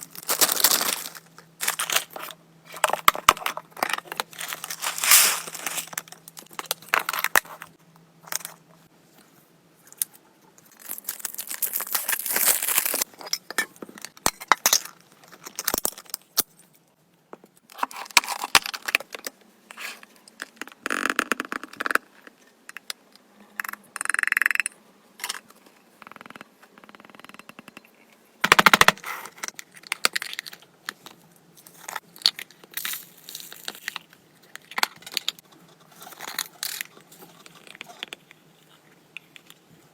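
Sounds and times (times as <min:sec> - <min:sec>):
packaging crinkling and rustling: 0:00.0 - 0:08.4, 0:10.7 - 0:13.1.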